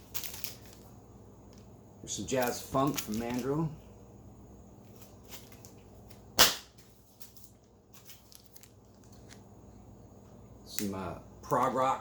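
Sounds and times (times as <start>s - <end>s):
sharp slap of record jacket: 6.4s - 6.8s.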